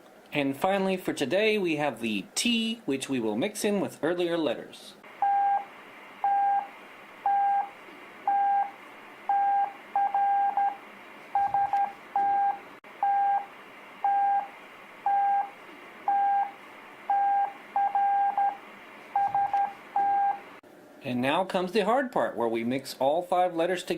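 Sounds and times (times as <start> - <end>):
morse code beeps: 5.2 - 6.7, 7.3 - 7.7, 8.3 - 8.7, 9.3 - 10.8, 11.4 - 14.5, 15.1 - 15.5, 16.1 - 18.6, 19.2 - 20.4.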